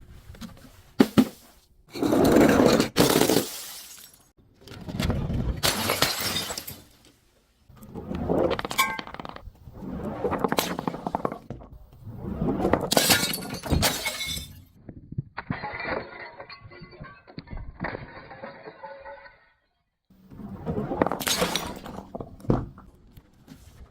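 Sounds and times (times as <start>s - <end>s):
glass bottles crushed and shattering: 2.6s - 4.3s, 5.6s - 7.0s, 8.6s - 9.4s, 12.8s - 14.8s, 15.4s - 19.8s, 21.2s - 22.1s.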